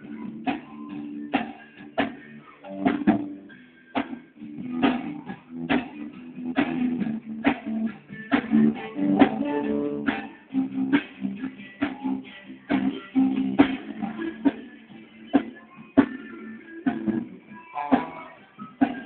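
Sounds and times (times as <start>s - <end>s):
guitar strummed: 4.8s - 12.2s.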